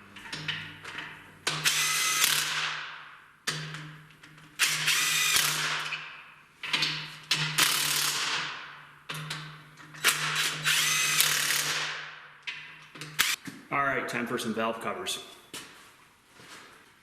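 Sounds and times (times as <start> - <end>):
impact wrench hammering: 4.6 - 13.4.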